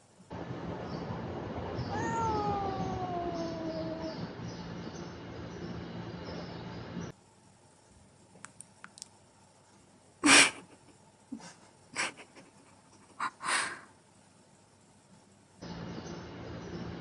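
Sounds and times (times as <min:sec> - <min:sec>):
faint clicks: 0:08.4 - 0:09.2.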